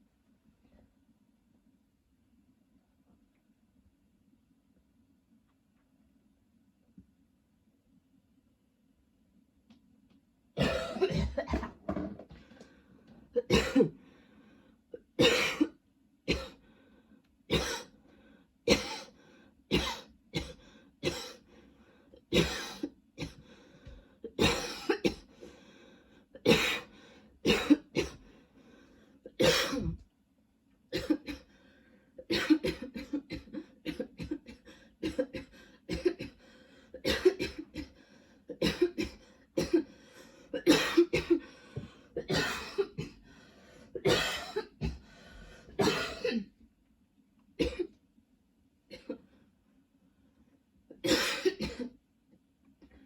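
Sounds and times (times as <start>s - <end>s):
woman coughing: 10.6s - 12.0s, 13.4s - 14.0s, 15.2s - 16.6s, 17.5s - 17.9s, 18.7s - 19.1s, 19.7s - 21.4s, 22.4s - 23.4s, 24.4s - 25.3s, 26.4s - 26.9s, 27.5s - 28.2s, 29.3s - 30.0s, 30.9s - 31.4s, 32.2s - 36.4s, 37.0s - 37.9s, 38.5s - 39.9s, 40.6s - 41.4s, 42.2s - 43.2s, 44.0s - 45.0s, 45.8s - 46.5s, 47.6s - 48.0s, 51.0s - 52.0s.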